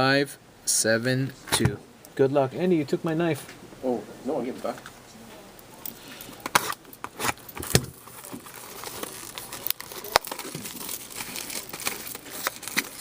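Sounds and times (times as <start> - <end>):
plastic wrap tearing and crinkling: 6.4 - 13.0.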